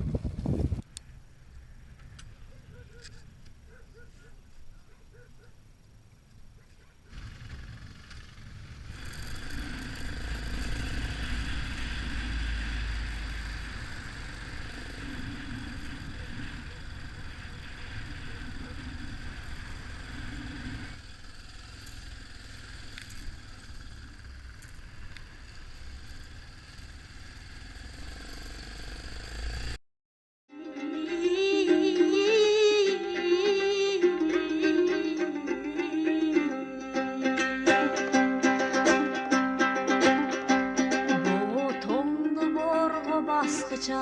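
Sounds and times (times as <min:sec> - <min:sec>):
motorcycle engine running: 0:07.1 - 0:29.8.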